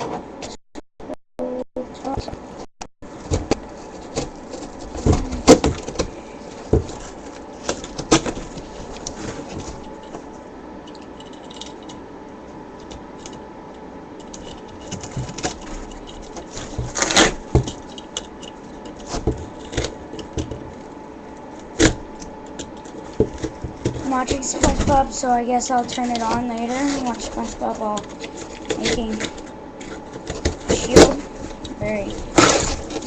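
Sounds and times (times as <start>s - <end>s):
knocks and rustles: 3.0s - 10.3s, 14.3s - 20.9s
craft knife cutting cardboard: 14.6s - 18.1s, 26.0s - 33.0s.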